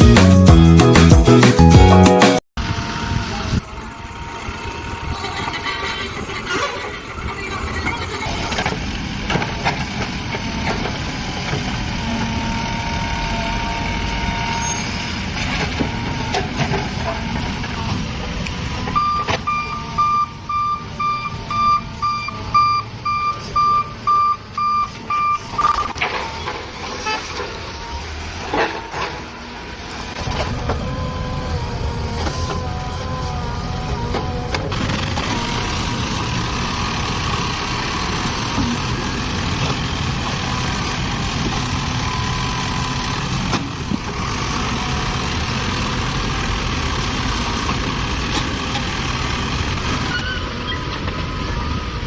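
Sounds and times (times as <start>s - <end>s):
diesel engine running: 0.0s - 52.0s
reversing alarm beeps: 18.8s - 27.2s, 38.7s - 43.5s.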